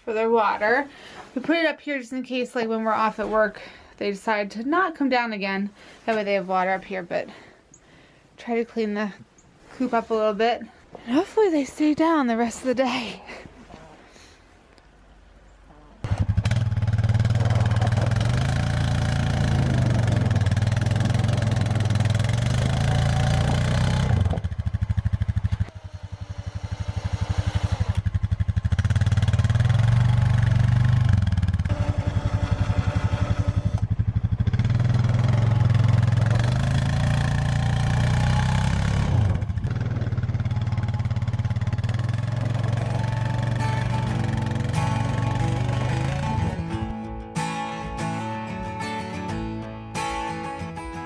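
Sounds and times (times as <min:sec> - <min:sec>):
atv engine running hard: 0:16.1 - 0:46.9.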